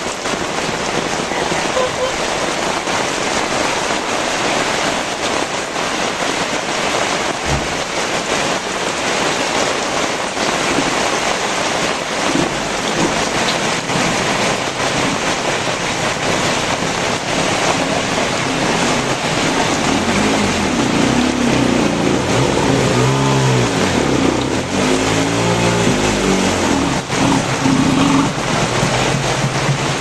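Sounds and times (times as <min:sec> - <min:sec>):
heavy rain pouring: 0:00.0 - 0:30.0
vehicle engine running: 0:15.9 - 0:30.0.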